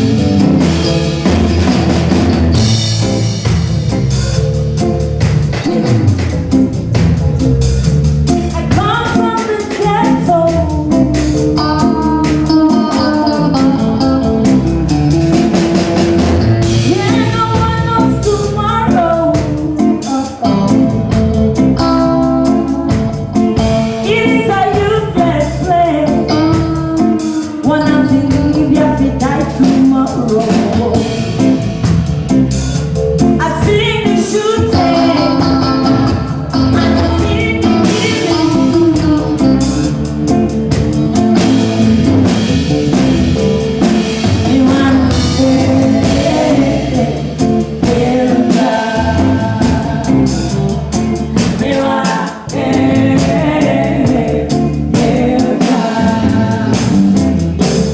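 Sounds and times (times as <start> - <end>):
drums: 0.0 - 57.9
live ragga band playing: 0.0 - 57.9
person singing: 8.4 - 14.6, 16.0 - 31.4, 33.4 - 42.6, 43.4 - 57.9.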